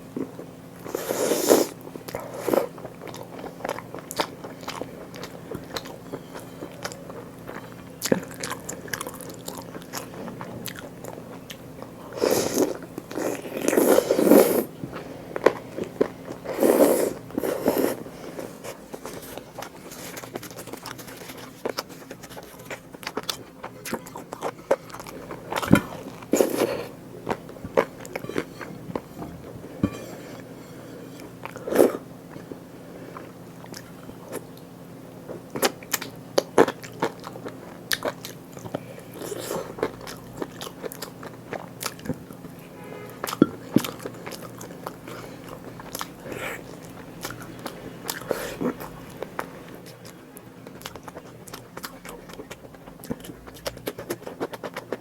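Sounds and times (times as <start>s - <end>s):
chewing food: 0.2s - 29.6s, 31.2s - 34.6s, 35.3s - 42.5s, 43.2s - 55.0s.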